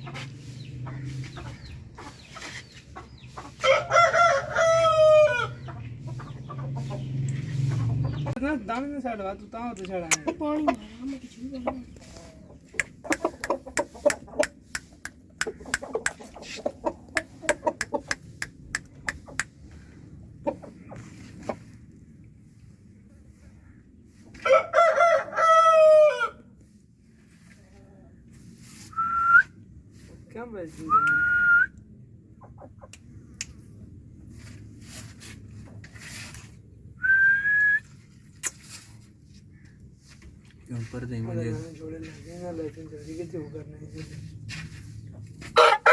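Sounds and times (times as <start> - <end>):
chickens clucking: 0.0 - 25.2, 32.1 - 36.0, 39.4 - 45.9
person whistling a long note: 29.0 - 29.5, 30.9 - 31.7, 37.0 - 37.9.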